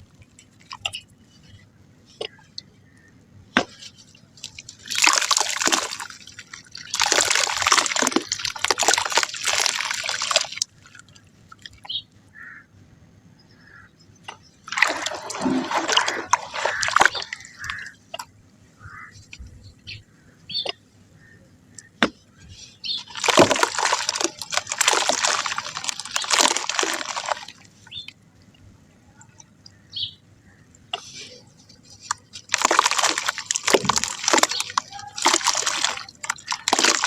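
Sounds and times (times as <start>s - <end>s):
mud splashing in water: 2.2s - 11.8s, 14.6s - 18.3s, 22.8s - 28.2s, 30.9s - 37.0s.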